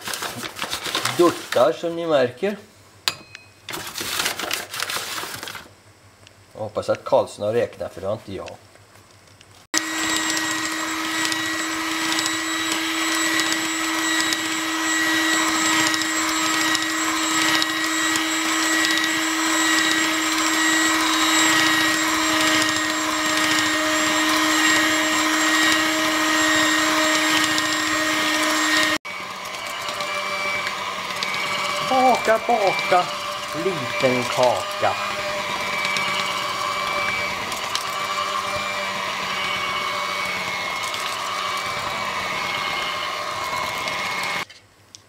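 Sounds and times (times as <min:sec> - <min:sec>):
electric mixer motor whining: 0:09.7 - 0:44.5.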